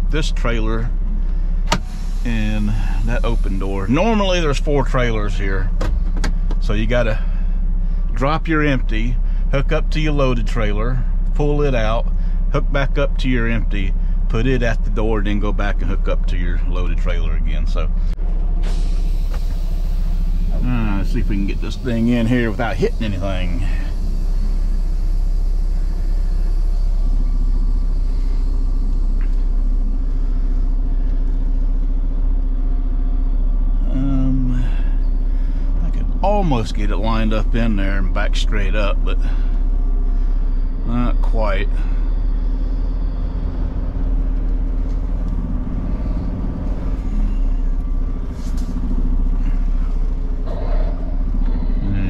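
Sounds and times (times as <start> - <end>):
steady hum: 0.0 - 52.0
truck diesel engine rumbling: 0.0 - 52.0.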